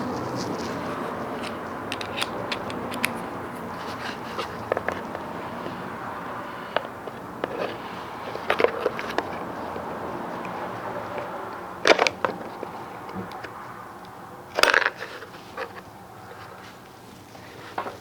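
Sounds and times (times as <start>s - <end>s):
light clicks and scrapes of metal clips: 0.1s - 5.1s.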